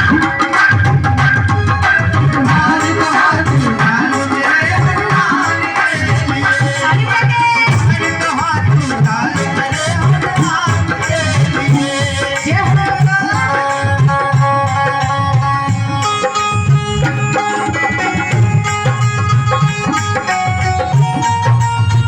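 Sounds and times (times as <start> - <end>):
hand drum rhythm: 0.0 - 22.0
sustained melody notes: 14.5 - 22.0.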